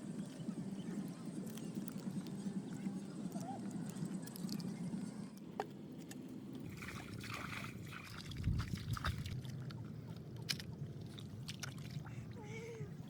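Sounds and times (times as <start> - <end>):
water sloshing and splashing: 6.6 - 13.0.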